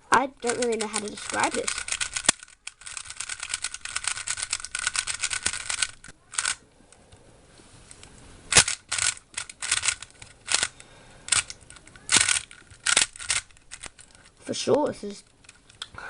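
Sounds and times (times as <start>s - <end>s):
puzzle cube plastic clicking: 0.3s - 6.6s, 8.0s - 14.4s, 15.2s - 15.9s.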